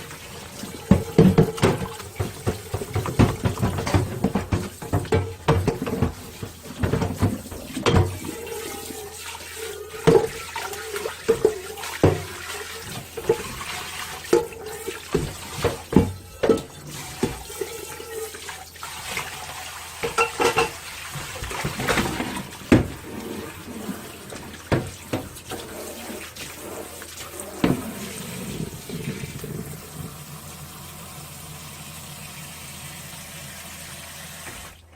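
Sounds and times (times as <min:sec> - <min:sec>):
tap water running: 0:00.0 - 0:34.9
dishes clinking: 0:00.9 - 0:08.5, 0:14.2 - 0:17.3, 0:20.0 - 0:20.8.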